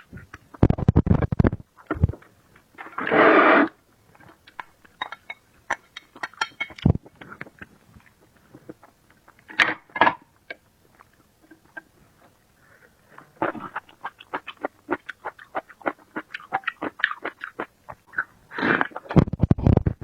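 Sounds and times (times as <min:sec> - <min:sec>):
chewing with wet mouth clicks: 0:13.7 - 0:18.3.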